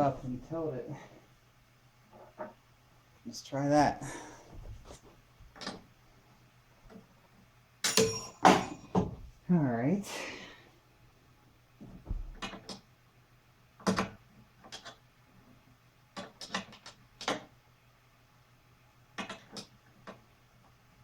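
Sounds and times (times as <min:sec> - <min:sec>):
tools and parts clacking: 0:07.8 - 0:09.2
dull thump: 0:11.9 - 0:12.4.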